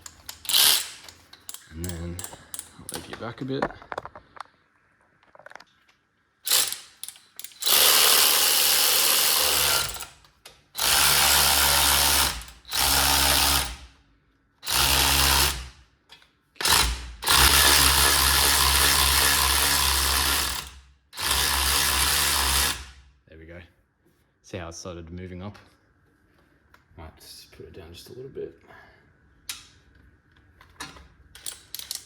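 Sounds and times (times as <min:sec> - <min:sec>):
cordless power tool running: 0:10.8 - 0:13.8.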